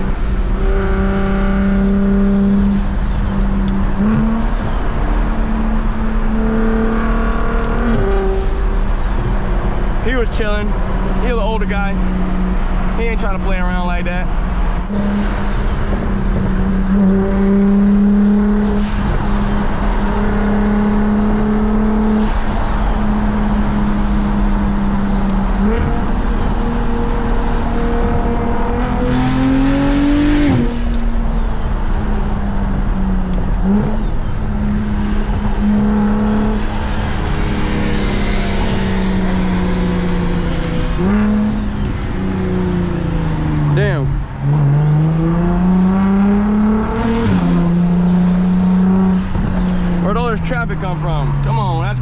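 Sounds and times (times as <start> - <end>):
car engine cruising: 0.0 - 52.0
high turbo whistle: 35.0 - 43.2.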